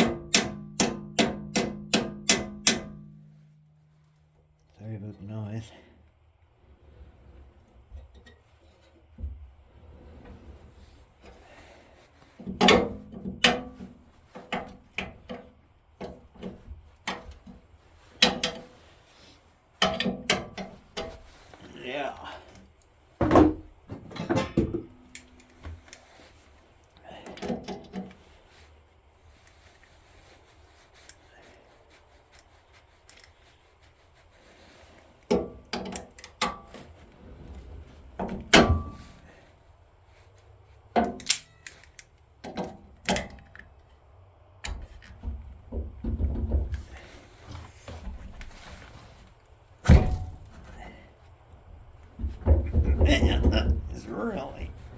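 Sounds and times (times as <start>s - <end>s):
tool knocking on metal: 0.0s - 3.0s.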